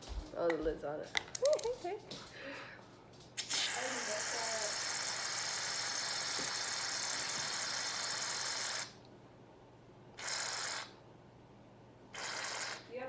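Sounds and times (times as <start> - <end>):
aerosol can hissing foam: 3.4 - 9.0, 10.2 - 10.9, 12.2 - 12.8.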